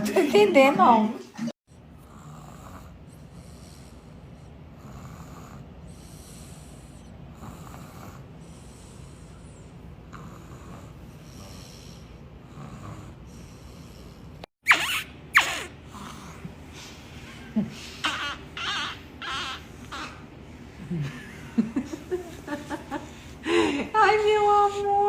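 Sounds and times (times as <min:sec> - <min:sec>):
girl snoring softly: 0:02.0 - 0:14.5, 0:15.9 - 0:16.6.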